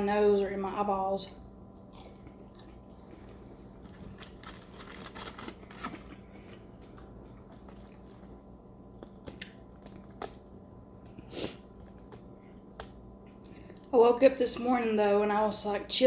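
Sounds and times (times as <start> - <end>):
chewing: 1.7 - 13.9
food wrapper rustling: 3.3 - 8.5.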